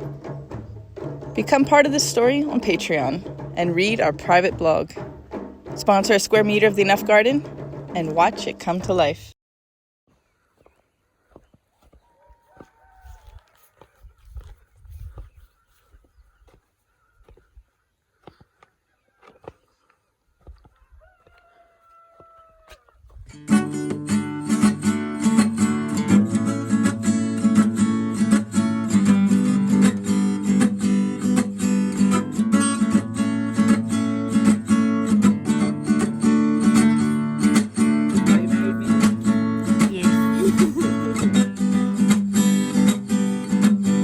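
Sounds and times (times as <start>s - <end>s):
strummed acoustic guitar: 23.3s - 44.0s.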